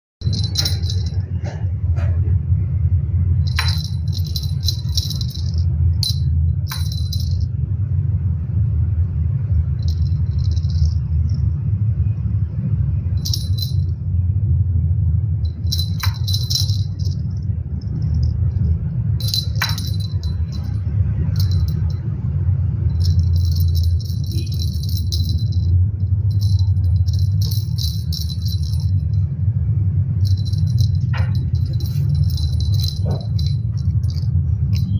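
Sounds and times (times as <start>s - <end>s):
metallic jingling: 0.2s - 1.5s, 3.4s - 7.7s, 9.6s - 11.7s, 13.0s - 14.0s, 15.4s - 29.4s, 30.1s - 34.9s
steady low hum: 0.2s - 34.9s.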